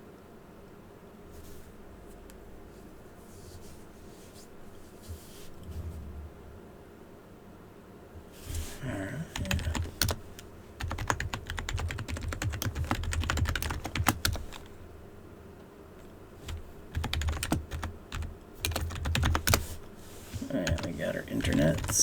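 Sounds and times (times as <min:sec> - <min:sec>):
typing on computer keyboard: 0:09.4 - 0:14.7, 0:16.4 - 0:22.0.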